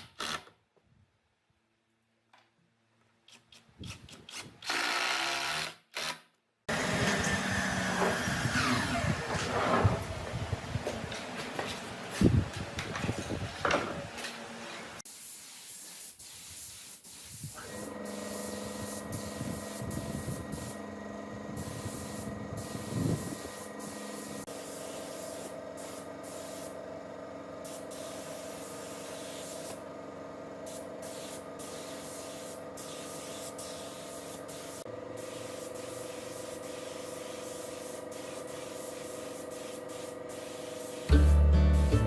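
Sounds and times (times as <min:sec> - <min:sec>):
small power tool humming: 0:04.6 - 0:09.5, 0:17.6 - 0:24.5.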